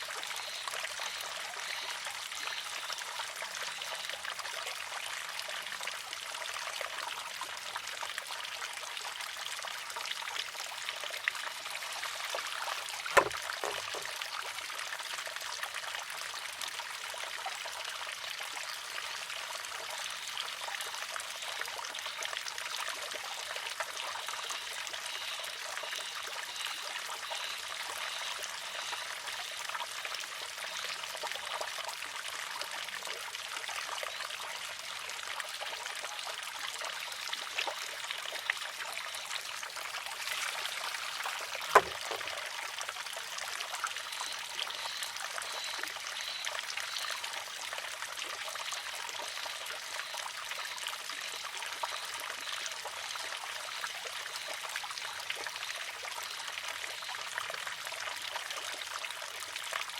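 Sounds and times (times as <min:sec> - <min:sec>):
water trickling from a spout: 0:00.0 - 0:59.9
wooden clack on rock: 0:13.1 - 0:14.1, 0:41.6 - 0:42.3.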